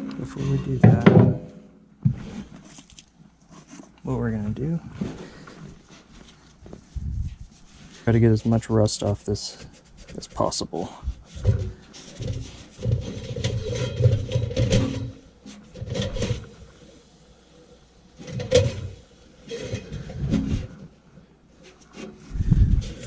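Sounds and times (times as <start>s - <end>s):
scraping rust off metal shaft: 11.2s - 16.7s, 18.2s - 20.8s.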